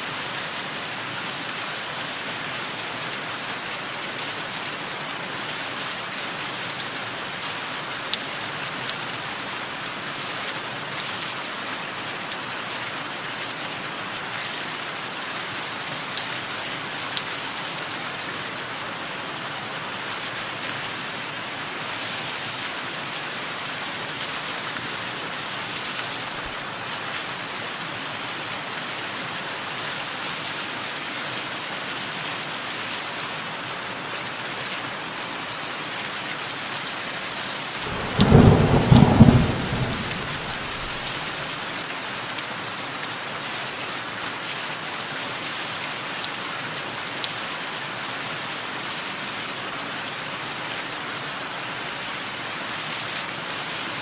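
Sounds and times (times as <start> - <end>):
steady rain falling: 0.0 - 54.0
thunder rumbling: 37.8 - 41.4.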